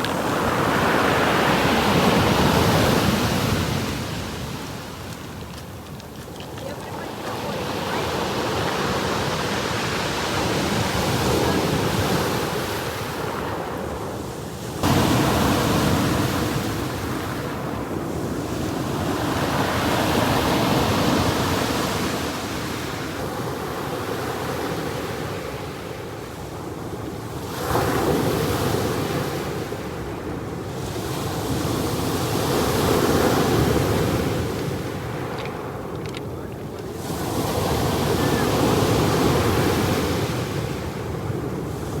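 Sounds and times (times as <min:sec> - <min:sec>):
waves breaking on shore: 0:00.0 - 0:26.2, 0:30.8 - 0:42.0.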